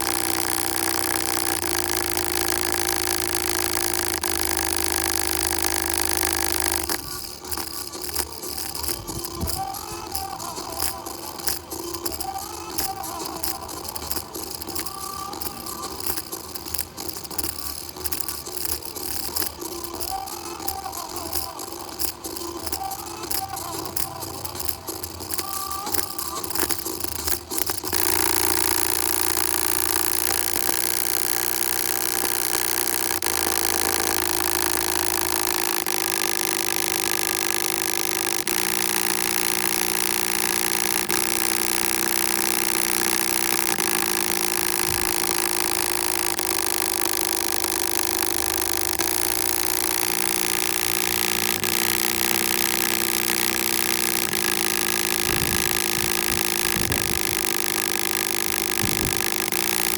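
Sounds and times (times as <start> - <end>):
machine running loudly: 0.0 - 59.9.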